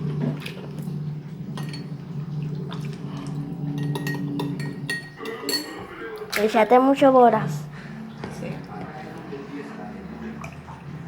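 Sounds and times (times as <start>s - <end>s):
steady low hum: 0.0s - 6.4s, 7.0s - 11.0s
kitchenware clicking and clinking: 1.6s - 2.0s, 3.7s - 6.7s.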